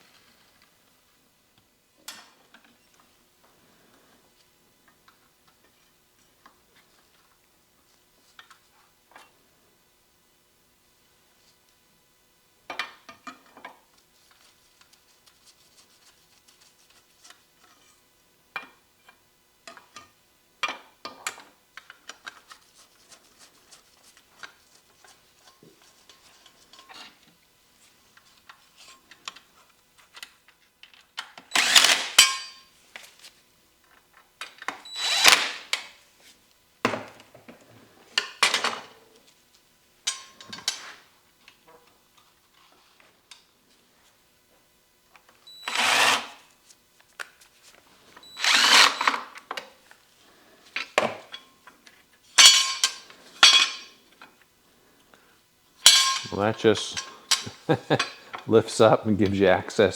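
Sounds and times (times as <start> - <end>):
tools clicking and clinking: 55.9 - 58.2.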